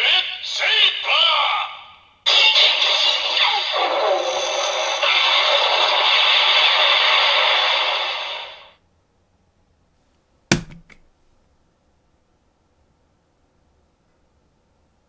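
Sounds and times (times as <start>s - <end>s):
sharp thunk: 10.5s - 11.1s.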